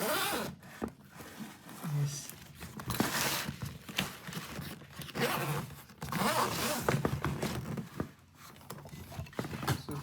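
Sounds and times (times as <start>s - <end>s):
bag zipper pulled: 5.2s - 6.9s.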